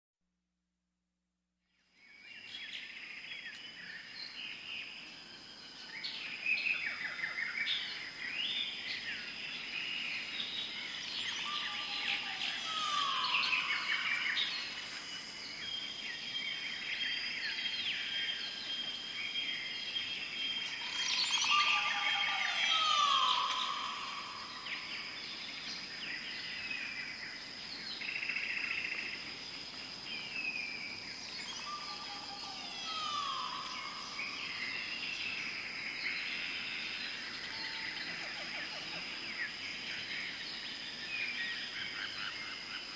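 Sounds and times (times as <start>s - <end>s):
songbirds chirping and singing: 2.0s - 29.1s, 30.0s - 42.9s
descending whistled bird call: 10.0s - 14.8s, 20.5s - 25.0s, 31.4s - 35.4s.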